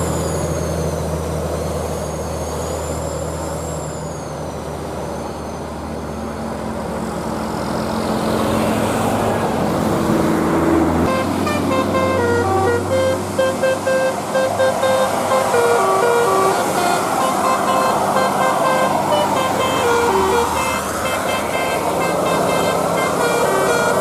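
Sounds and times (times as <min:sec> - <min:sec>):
bus engine humming: 0:00.0 - 0:24.0
multi-tone horn playing a tune: 0:11.1 - 0:24.0.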